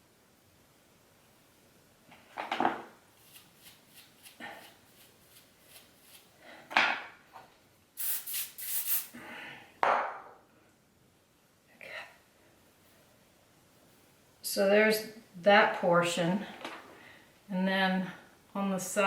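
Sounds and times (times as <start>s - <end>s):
brush scraping through hair: 3.2s - 6.4s.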